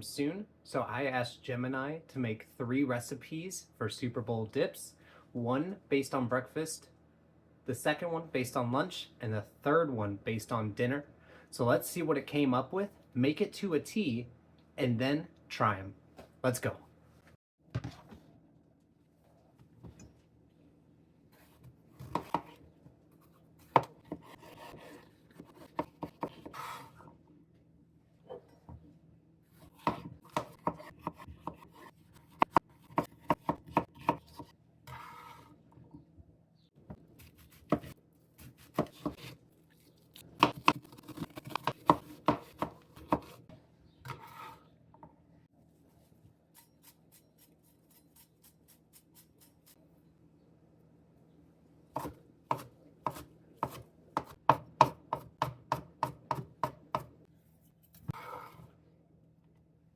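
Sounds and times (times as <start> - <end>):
knife chopping on cutting board: 21.4 - 22.6, 23.6 - 26.9, 29.6 - 35.3, 37.2 - 39.4, 40.4 - 43.4, 52.0 - 57.1.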